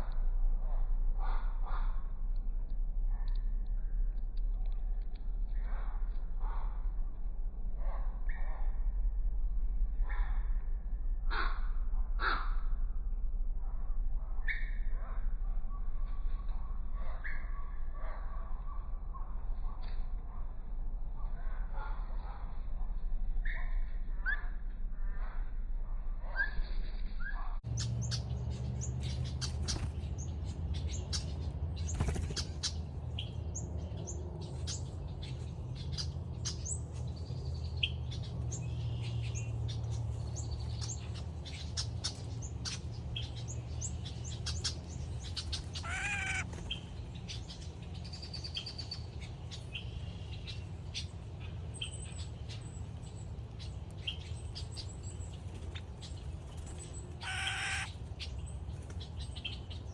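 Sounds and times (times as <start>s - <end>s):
steady low rumble: 0.0s - 59.9s
birds chirping and calling: 27.7s - 59.9s
wavering bird call: 45.8s - 46.5s, 57.2s - 57.9s.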